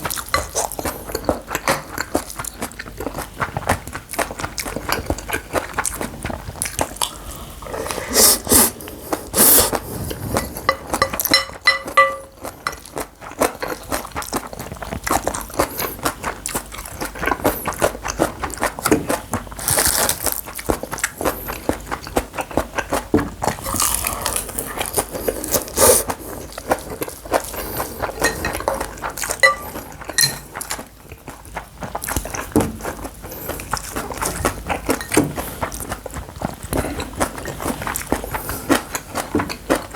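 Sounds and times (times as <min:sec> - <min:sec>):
chewing and biting: 0:00.0 - 0:39.9
spoon clinking against bowl: 0:10.4 - 0:12.8, 0:29.4 - 0:30.4.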